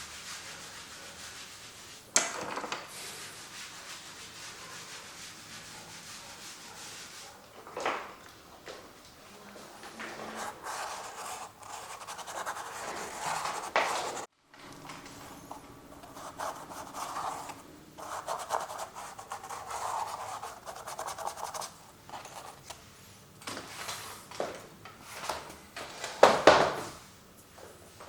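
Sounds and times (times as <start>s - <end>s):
paint scratching on canvas: 0.0s - 2.0s, 2.9s - 7.4s, 10.1s - 14.3s, 15.3s - 22.6s.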